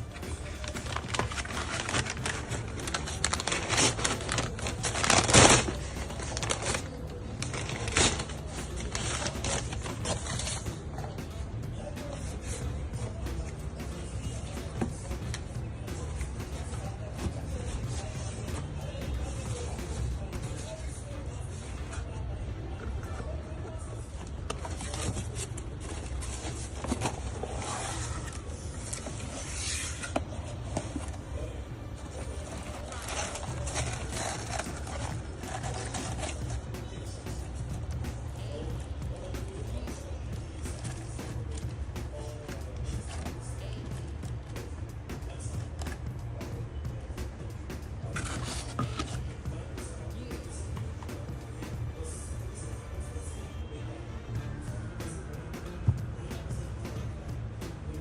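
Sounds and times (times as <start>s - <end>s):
papery rustle: 0.0s - 22.2s, 22.9s - 46.1s, 47.8s - 53.3s
packaging rustling: 0.1s - 10.6s, 24.4s - 36.7s.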